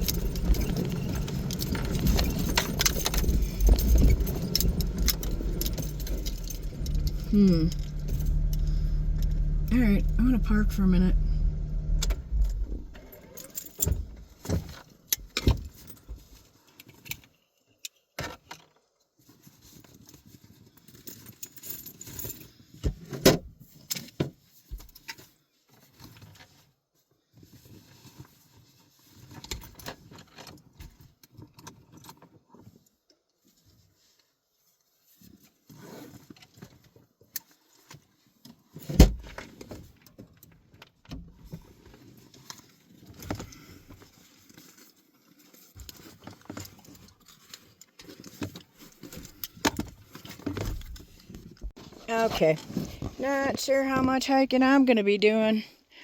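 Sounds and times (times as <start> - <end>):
clicks rattles and rustling: 0.0 - 8.7, 36.2 - 54.4
keys jangling: 0.0 - 8.8.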